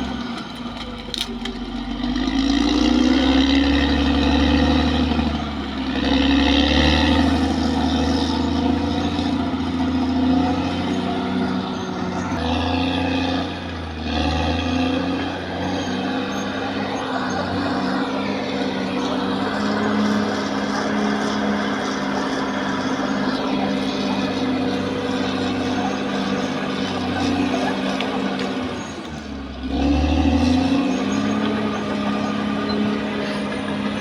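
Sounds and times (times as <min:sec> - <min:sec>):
bulldozer diesel engine under load: 0:00.0 - 0:34.0.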